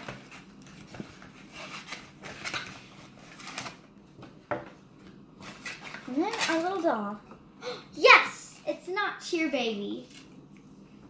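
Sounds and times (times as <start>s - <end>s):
plastic packaging rustling: 0.0s - 3.9s, 5.4s - 7.2s.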